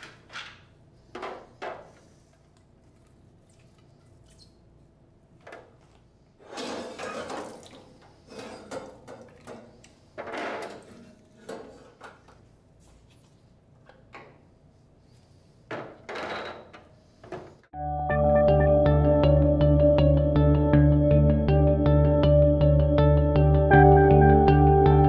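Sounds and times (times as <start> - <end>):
machine parts clunking and scraping: 6.4 - 7.6.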